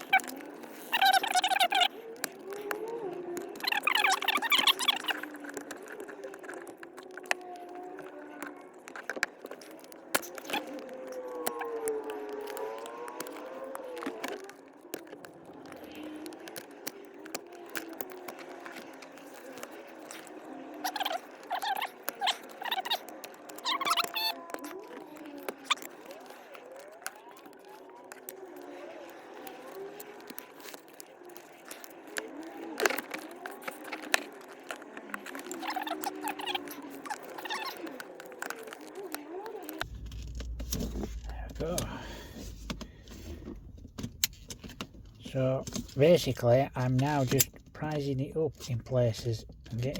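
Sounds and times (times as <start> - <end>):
faint low tones: 39.8 - 45.3.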